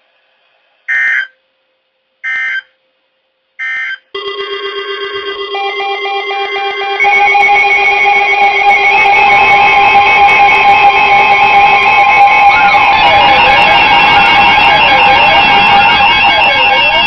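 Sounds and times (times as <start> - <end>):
buzzy electronic data tones: 3.6 - 17.0
music: 4.2 - 17.0.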